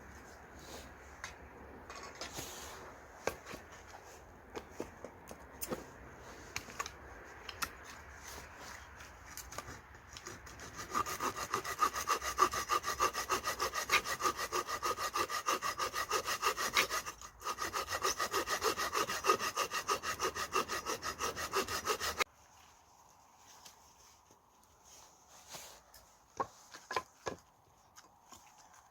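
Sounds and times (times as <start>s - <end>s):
hand saw cutting wood: 9.4s - 22.3s.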